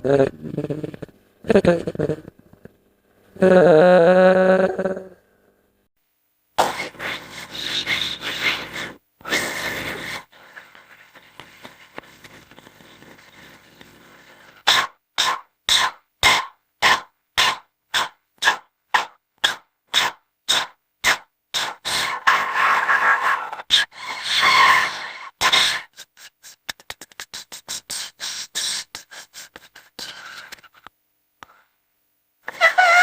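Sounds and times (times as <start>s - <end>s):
harsh rasping creature call: 14.7s - 25.9s, 32.5s - 33.0s.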